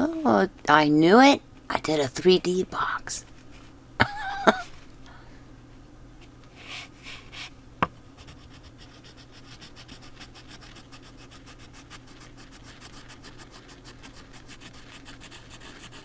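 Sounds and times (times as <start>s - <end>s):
pencil scratching on paper: 8.2s - 16.0s.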